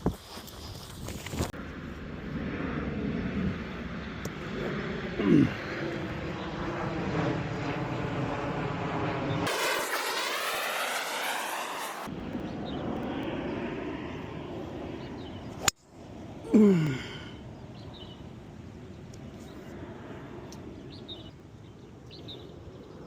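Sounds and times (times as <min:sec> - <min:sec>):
short loud falling-pitch sound: 0:09.5 - 0:12.1.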